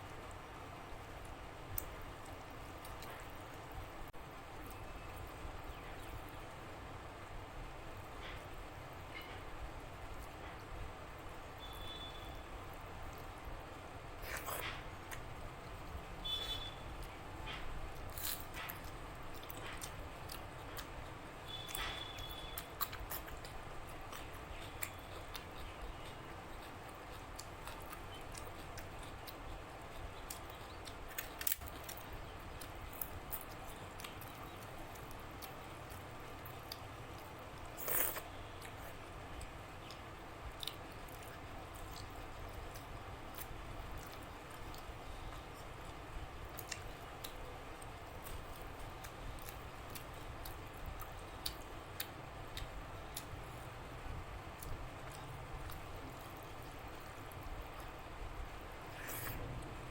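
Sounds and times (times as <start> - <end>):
wet chewing and biting: 17.5 - 45.7.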